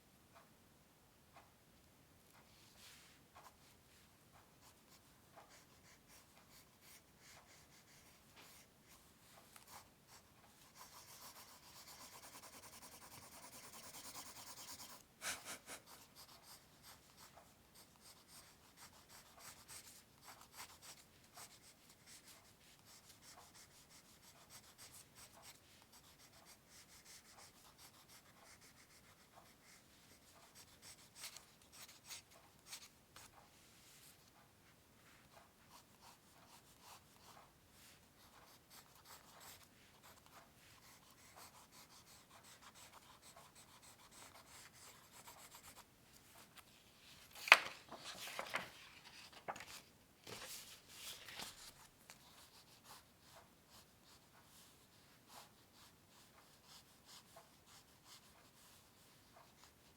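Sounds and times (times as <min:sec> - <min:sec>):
pencil scratching on paper: 0:04.6 - 0:09.0, 0:09.6 - 0:33.3, 0:35.3 - 0:45.8, 0:55.3 - 0:59.7.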